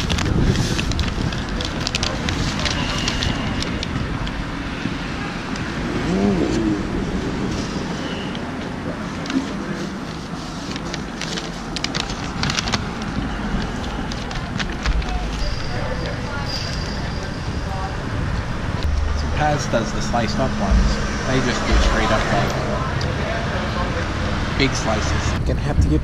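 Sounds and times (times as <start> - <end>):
road traffic: 0.0 - 25.7
wavering voice-like sound: 5.9 - 8.2.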